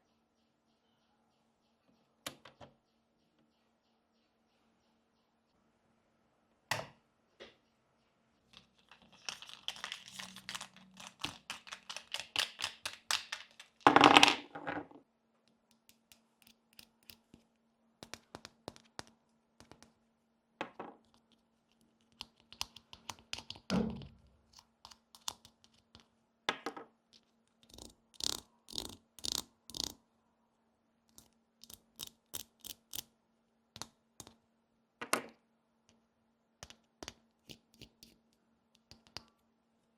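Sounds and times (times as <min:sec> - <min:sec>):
toy pieces clicking and tapping: 0:09.2 - 0:14.4, 0:18.0 - 0:19.8, 0:22.1 - 0:23.7, 0:24.6 - 0:26.0, 0:27.6 - 0:30.0, 0:31.1 - 0:33.1, 0:38.8 - 0:39.3.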